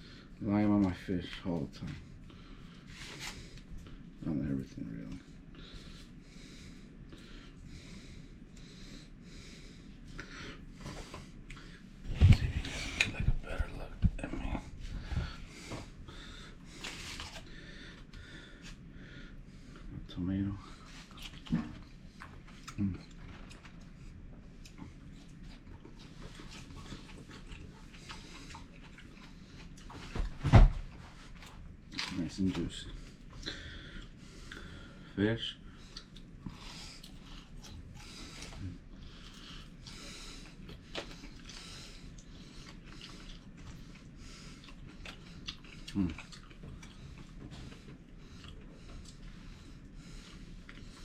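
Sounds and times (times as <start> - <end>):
person chewing and lip smacking: 21.0 - 24.0, 35.8 - 49.5, 50.6 - 51.0.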